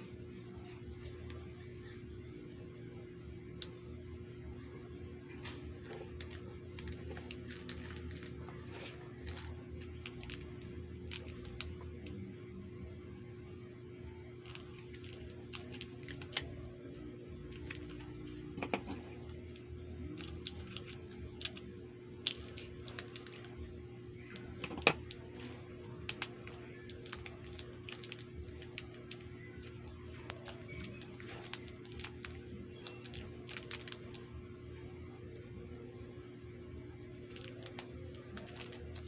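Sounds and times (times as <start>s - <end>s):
steady low hum: 0.0s - 39.0s
candy wrappers crinkling: 5.8s - 12.2s, 14.3s - 34.3s, 37.2s - 39.0s.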